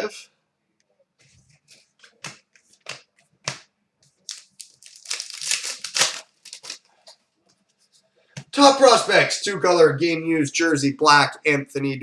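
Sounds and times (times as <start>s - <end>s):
plastic packaging crinkling: 4.2s - 7.2s.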